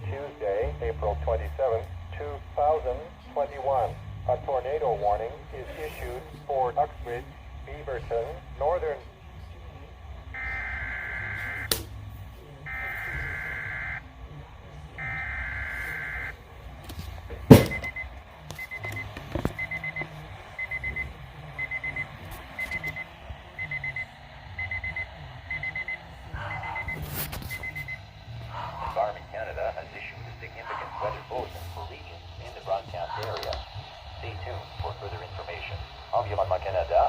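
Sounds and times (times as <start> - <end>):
alarm beeping in short groups: 10.4 - 11.7, 12.7 - 14.0, 17.6 - 28.1.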